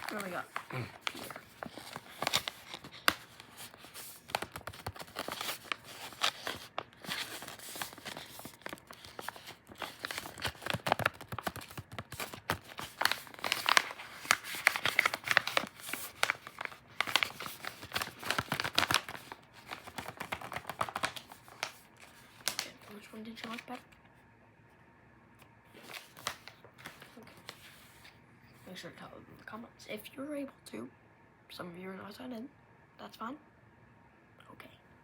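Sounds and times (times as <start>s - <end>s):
toy crinkling and rustling: 0.0s - 23.8s.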